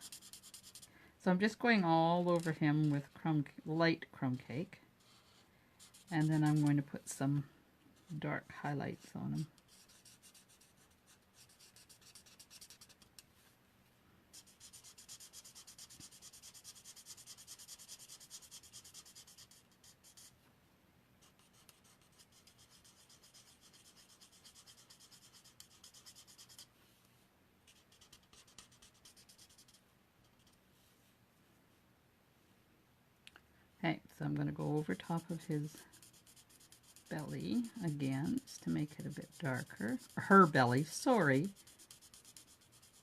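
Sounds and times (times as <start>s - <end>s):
marker scratching on card: 0.0s - 0.9s, 5.0s - 6.8s, 9.4s - 13.2s, 14.4s - 20.3s, 21.3s - 26.7s, 27.7s - 29.8s, 35.0s - 43.0s.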